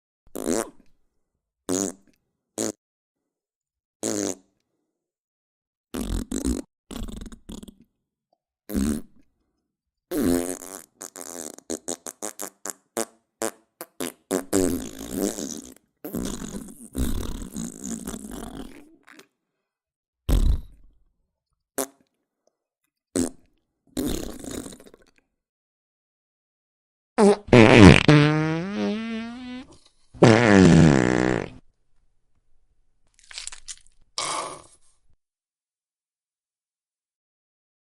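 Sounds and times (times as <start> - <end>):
fart sound effects: 6.0 - 7.7, 13.4 - 18.8, 20.3 - 20.8, 27.2 - 31.6.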